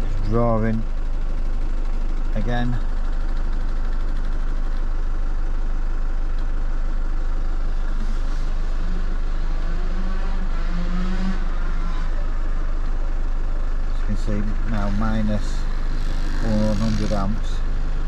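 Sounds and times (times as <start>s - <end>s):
van engine idling: 0.0s - 18.0s
humming tone wavering in pitch: 7.8s - 12.6s.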